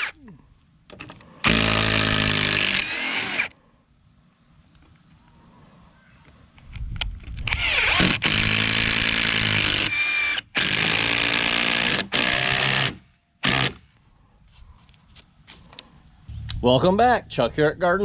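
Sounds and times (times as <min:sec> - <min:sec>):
power drill driving screws into wood: 0:01.4 - 0:03.5, 0:07.4 - 0:13.8.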